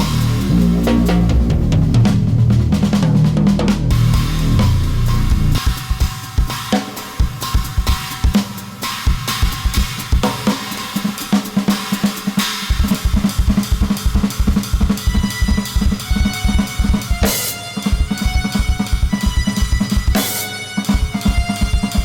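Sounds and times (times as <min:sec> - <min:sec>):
cymbal crash: 0:00.0 - 0:02.0
drum kit playing: 0:00.0 - 0:22.0.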